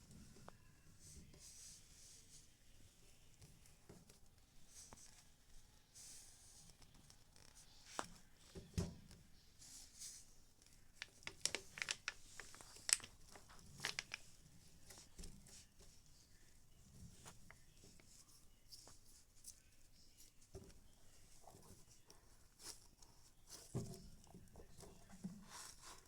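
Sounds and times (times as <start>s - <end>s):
plastic packaging rustling: 11.0s - 15.0s.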